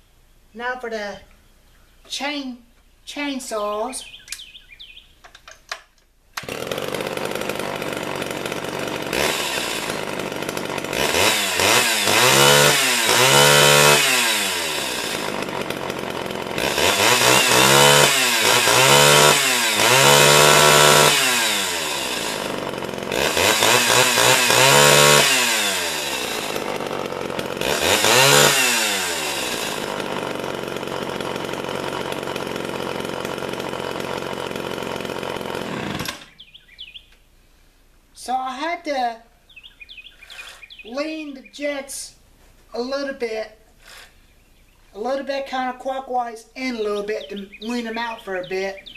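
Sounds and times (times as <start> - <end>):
chainsaw idling and revving: 6.4 - 36.6, 45.0 - 48.9.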